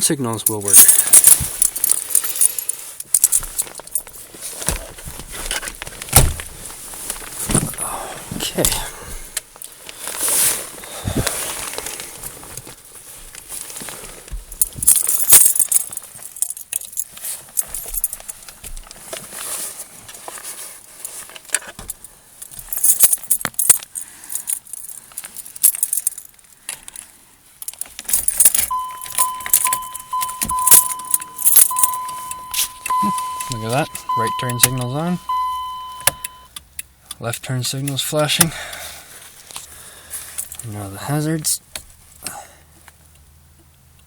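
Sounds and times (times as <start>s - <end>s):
car keys jangling: 0.3s - 6.6s, 14.3s - 18.9s, 21.4s - 27.0s, 27.6s - 36.9s, 40.3s - 40.7s
electronic warning tone: 28.7s - 36.5s.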